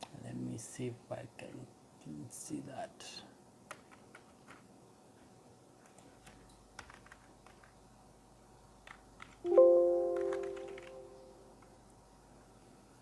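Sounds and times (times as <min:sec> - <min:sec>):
keyboard keys clicking: 0:08.9 - 0:11.2
loud ringing tone: 0:09.5 - 0:11.4.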